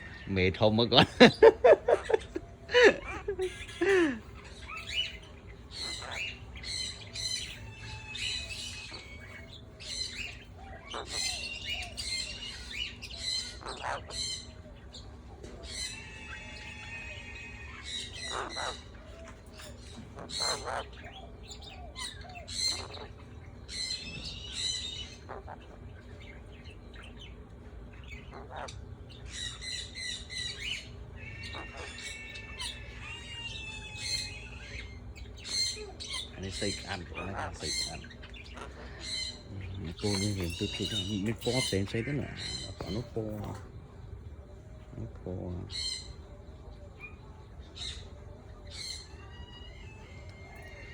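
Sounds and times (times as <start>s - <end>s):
faint steady hum: 0.0s - 50.9s
parrots chirping and squawking: 0.0s - 50.9s.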